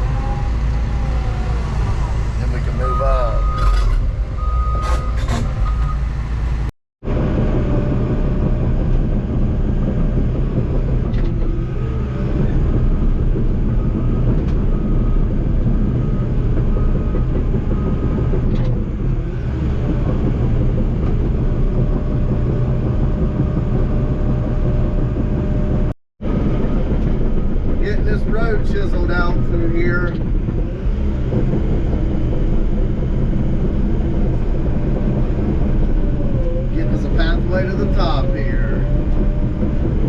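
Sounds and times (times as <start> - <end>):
diesel engine under load: 0.0 - 40.0
faint backup alarm beeping: 2.7 - 3.8.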